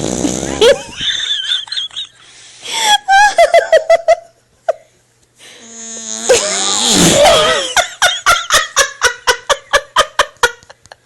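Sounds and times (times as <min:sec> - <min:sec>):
fart sound effect: 0:00.0 - 0:00.7, 0:05.6 - 0:07.6.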